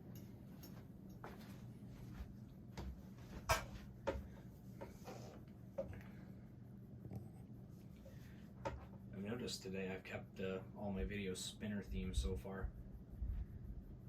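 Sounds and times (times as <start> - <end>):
fan clicks and ticks: 0.0 - 1.5, 8.6 - 13.0
ceiling fan low hum: 0.0 - 14.0.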